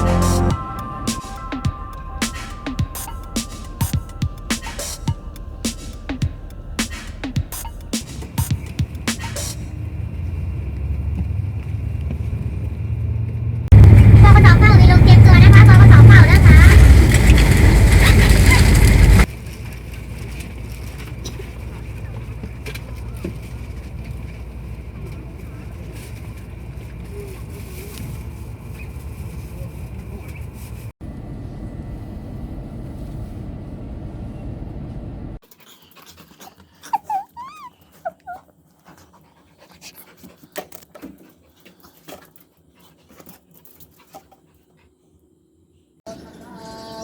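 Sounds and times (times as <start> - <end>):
vehicle engine low rumble: 0.0 - 35.4.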